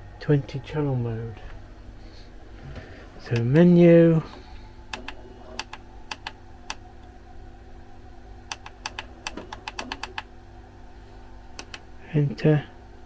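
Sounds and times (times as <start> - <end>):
small buttons clicking: 4.3 - 7.1, 8.5 - 10.3, 11.6 - 11.8.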